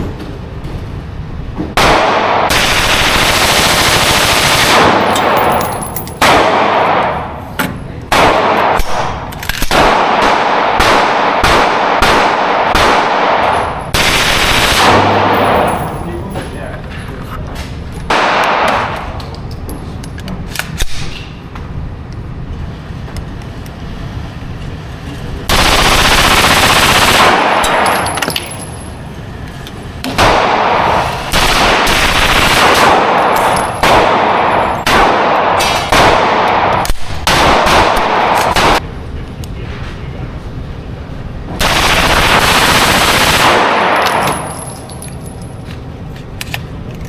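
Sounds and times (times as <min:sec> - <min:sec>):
rapid rifle gunfire: 0:01.8 - 0:05.6, 0:08.1 - 0:15.7, 0:25.5 - 0:27.9, 0:30.2 - 0:38.8, 0:41.6 - 0:44.0.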